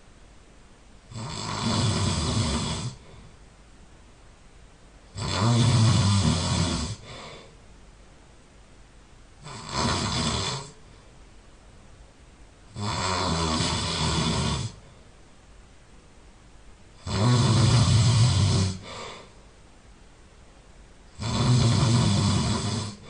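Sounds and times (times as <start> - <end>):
person snoring loudly: 1.1 - 3.3, 5.1 - 7.5, 9.4 - 10.9, 12.7 - 14.9, 17.0 - 19.3, 21.1 - 23.0
quiet breathing: 1.1 - 4.1, 5.1 - 8.1, 9.4 - 11.4, 12.7 - 15.3, 17.0 - 19.8, 20.4 - 23.0.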